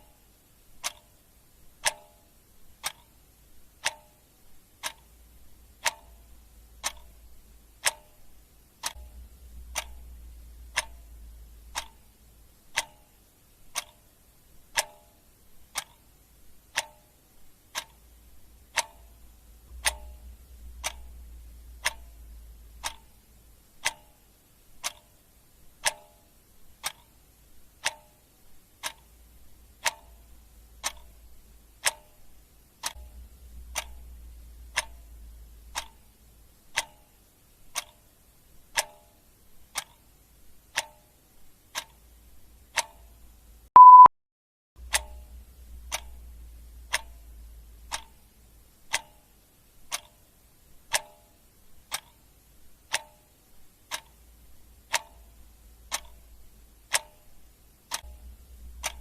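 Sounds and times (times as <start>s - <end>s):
clock ticking: 0.0s - 44.1s, 44.8s - 59.0s
short high beep: 43.8s - 44.1s.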